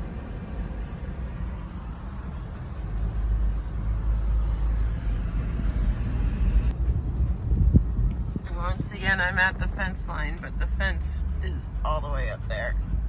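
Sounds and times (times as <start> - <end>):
vehicle rumbling: 0.0 - 13.0.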